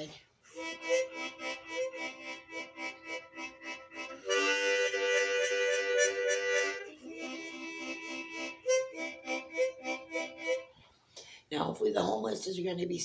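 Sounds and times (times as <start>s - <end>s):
reed instrument music: 0.5s - 10.8s.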